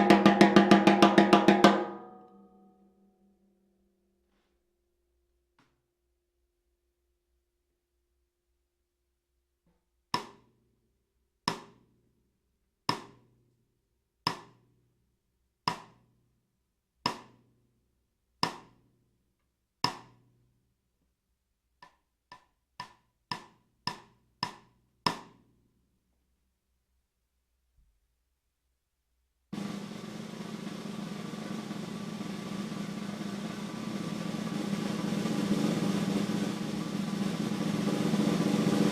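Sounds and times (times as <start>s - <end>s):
snare drum hits: 0.0s - 2.2s, 29.6s - 38.9s.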